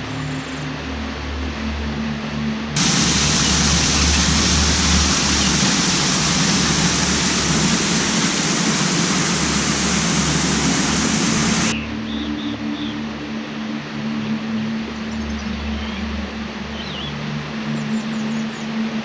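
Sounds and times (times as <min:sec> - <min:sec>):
waterfall rushing: 0:02.8 - 0:11.7.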